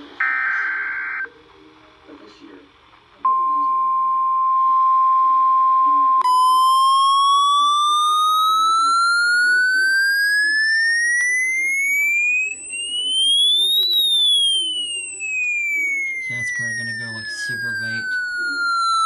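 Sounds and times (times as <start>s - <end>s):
electronic siren-like alert tone: 0.0s - 1.3s, 6.3s - 19.0s
steady radio alert tone: 0.0s - 1.3s, 6.2s - 19.0s.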